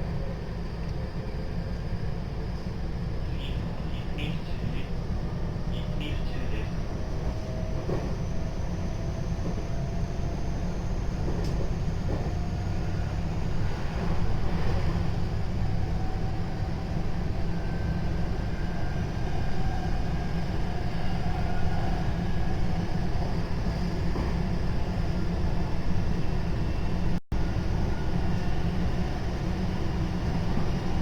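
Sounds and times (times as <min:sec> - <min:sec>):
train wheels rumbling on rail: 0:00.0 - 0:31.0.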